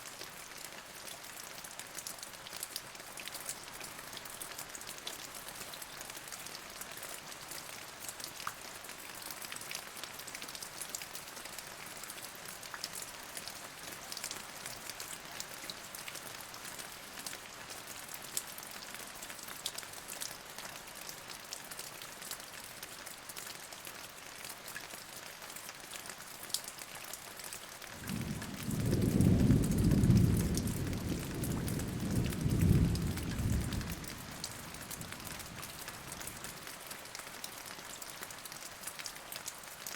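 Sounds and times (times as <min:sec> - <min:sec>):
rain drops ticking: 0:00.1 - 0:39.9
thunder rumbling: 0:28.0 - 0:35.3.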